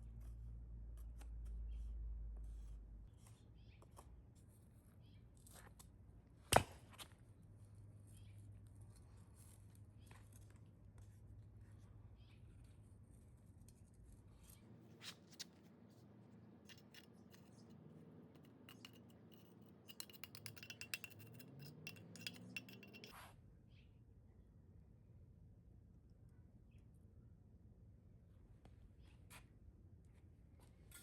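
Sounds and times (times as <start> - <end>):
faint clicks and scratching: 12.4 - 23.2.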